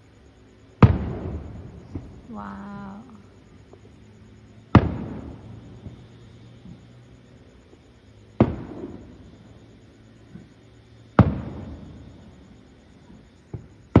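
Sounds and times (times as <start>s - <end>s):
fireworks booming: 0.8s - 4.0s, 4.7s - 14.0s.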